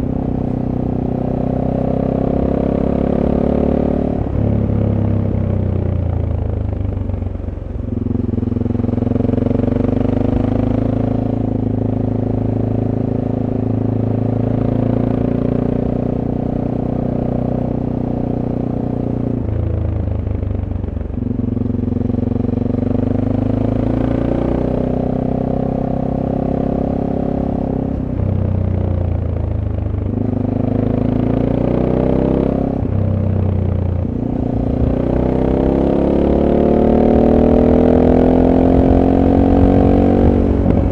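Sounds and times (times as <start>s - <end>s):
motorcycle engine accelerating: 0.0s - 40.9s.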